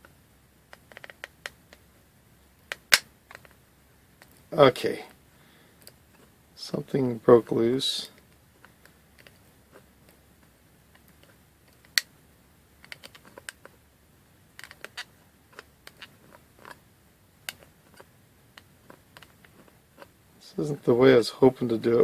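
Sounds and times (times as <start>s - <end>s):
plastic wrench parts clicking: 0.7s - 1.6s, 12.8s - 13.7s, 14.6s - 16.8s.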